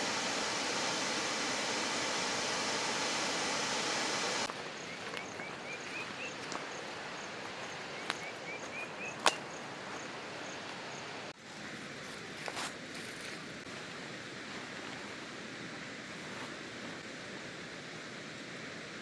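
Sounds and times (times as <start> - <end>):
falling water hiss: 0.0 - 11.7
bird chirps: 4.8 - 6.9, 8.0 - 10.1.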